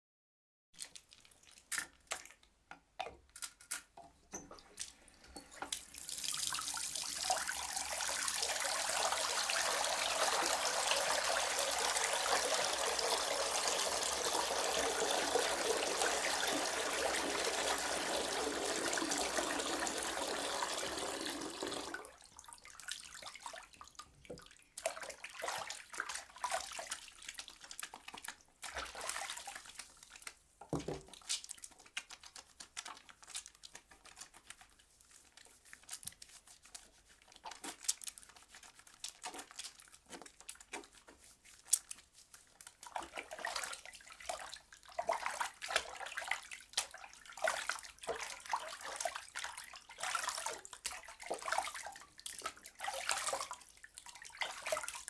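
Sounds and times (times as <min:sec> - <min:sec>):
tap running water: 0:04.4 - 0:22.2
water splashes: 0:05.7 - 0:30.1, 0:42.8 - 0:55.0
wet hand rubbing: 0:31.9 - 0:42.8.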